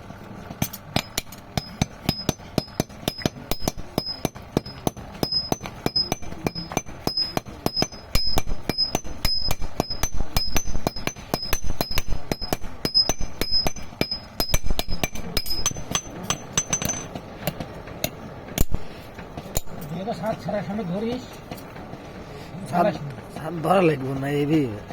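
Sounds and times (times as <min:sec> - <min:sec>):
hammer ringing on anvil: 0:00.6 - 0:17.2.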